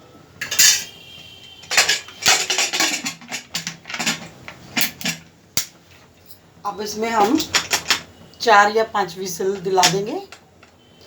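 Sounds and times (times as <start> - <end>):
metal lid scraping and clattering: 0.4 - 0.9, 1.6 - 5.3.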